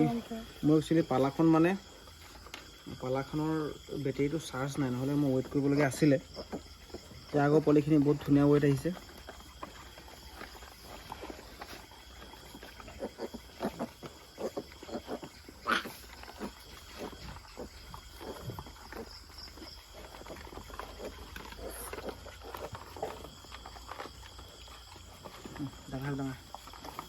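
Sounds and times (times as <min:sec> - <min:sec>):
pigs grunting: 0:03.4 - 0:27.0
pig squealing: 0:12.6 - 0:18.4.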